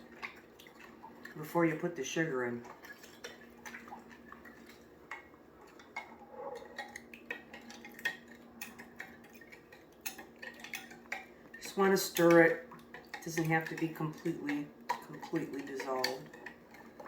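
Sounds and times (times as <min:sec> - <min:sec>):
faint steady hum: 0:00.0 - 0:17.0.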